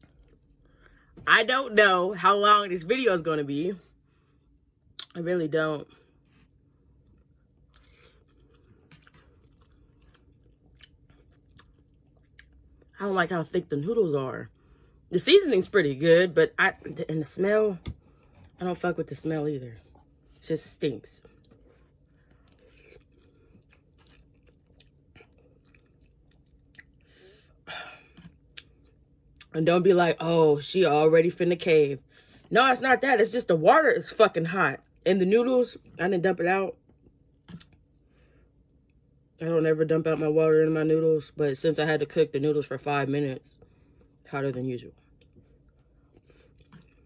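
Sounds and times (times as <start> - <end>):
person chewing noodles: 0.0 - 0.7, 6.0 - 12.9, 21.2 - 29.5, 45.0 - 47.0.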